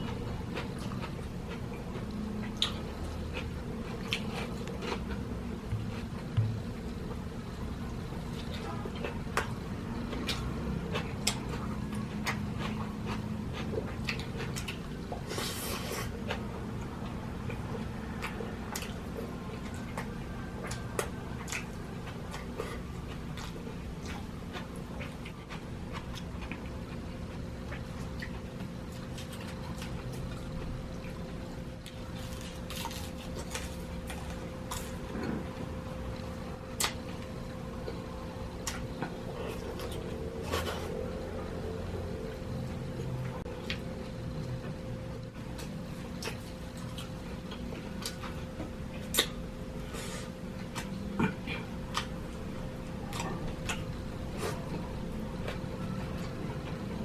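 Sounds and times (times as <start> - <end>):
low steady hum: 0.0 - 57.0
wet chewing and mouth smacks: 45.2 - 49.4, 50.0 - 56.8.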